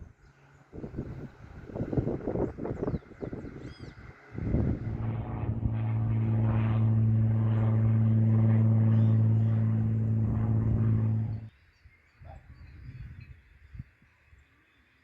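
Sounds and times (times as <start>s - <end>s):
engine drone: 4.2s - 11.5s.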